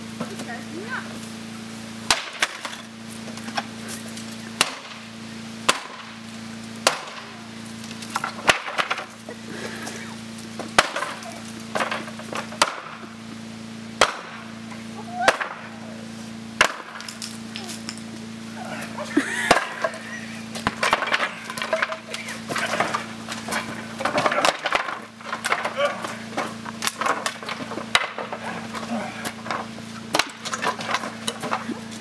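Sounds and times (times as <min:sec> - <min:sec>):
sledgehammer striking wood: 0:02.1 - 0:02.8, 0:04.6 - 0:05.0, 0:05.6 - 0:06.2, 0:06.8 - 0:07.3, 0:08.1 - 0:09.1, 0:10.6 - 0:13.0, 0:14.0 - 0:14.4, 0:16.6 - 0:17.2, 0:20.6 - 0:31.7
wood cracking and rattling: 0:07.8 - 0:09.2, 0:10.6 - 0:12.9, 0:19.5 - 0:32.0.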